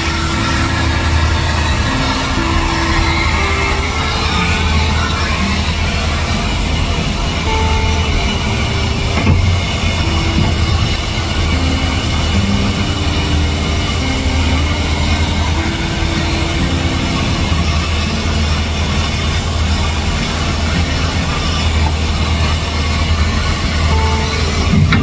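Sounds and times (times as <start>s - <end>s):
heavy machinery rumbling: 0.0s - 25.0s
slow melody of held notes: 0.0s - 25.0s.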